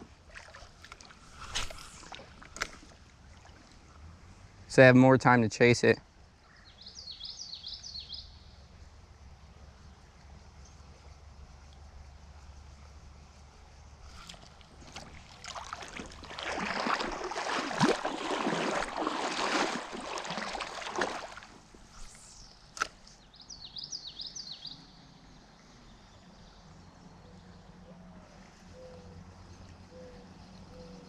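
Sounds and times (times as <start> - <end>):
wading through shallow water: 0.0 - 4.6, 14.0 - 23.1.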